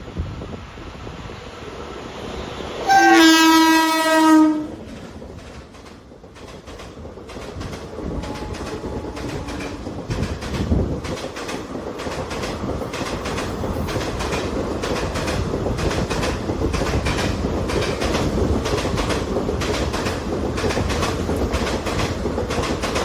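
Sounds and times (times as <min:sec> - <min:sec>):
low rumble of rolling train: 0:00.0 - 0:23.0
train wheels clattering over rail joints: 0:04.7 - 0:23.0.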